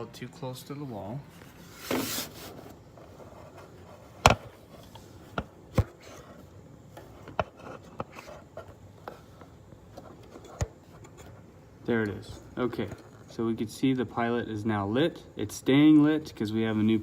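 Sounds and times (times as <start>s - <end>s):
faint rubbing: 1.3s - 4.2s.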